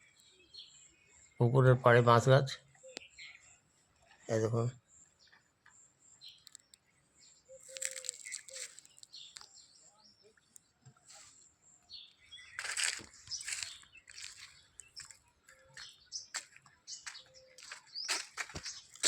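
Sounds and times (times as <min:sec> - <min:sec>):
birds chirping: 0:00.0 - 0:19.0
rustling: 0:07.6 - 0:09.4.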